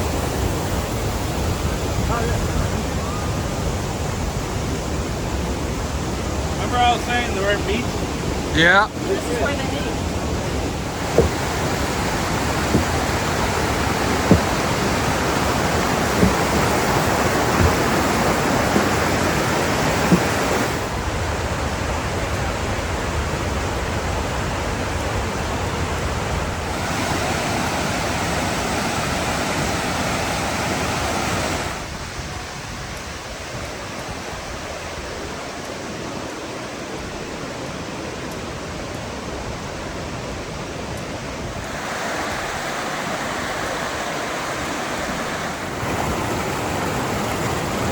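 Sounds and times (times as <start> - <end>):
creek water and waterfalls rushing: 0.0 - 47.9
faint knocks: 11.0 - 20.8.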